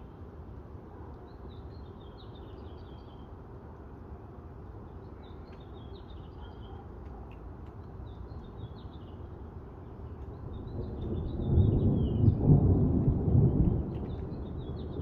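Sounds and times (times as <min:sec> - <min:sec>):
low storm rumble: 0:10.4 - 0:15.0.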